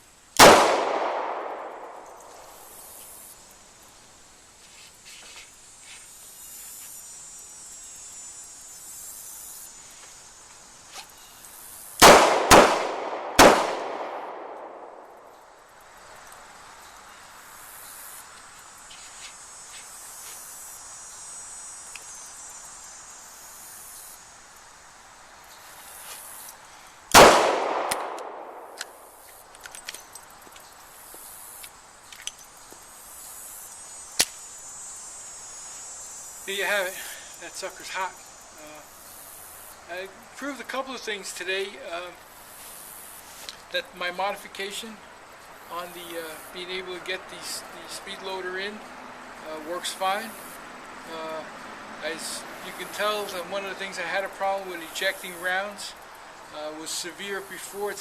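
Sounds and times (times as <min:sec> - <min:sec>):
revolver gunshots: 0:00.4 - 0:02.2, 0:12.0 - 0:15.2, 0:27.2 - 0:29.0.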